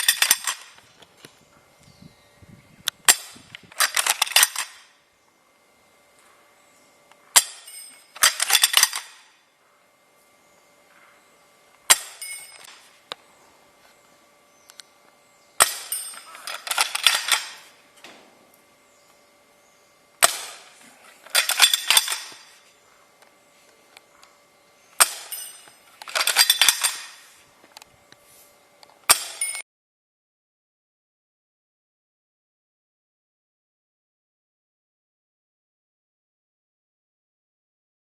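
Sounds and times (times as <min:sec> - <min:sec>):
rifle bolt clatter: 0:00.0 - 0:00.8, 0:03.7 - 0:04.9, 0:07.4 - 0:09.3, 0:15.6 - 0:17.7, 0:20.2 - 0:22.5, 0:25.0 - 0:27.2
airsoft rifle shot snap: 0:20.2 - 0:20.7.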